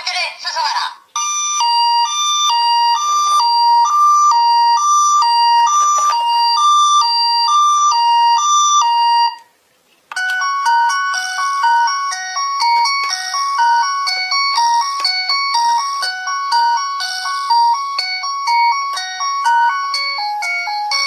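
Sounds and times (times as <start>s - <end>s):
electronic tones: 1.2s - 9.5s
two-tone ambulance siren: 1.2s - 9.5s.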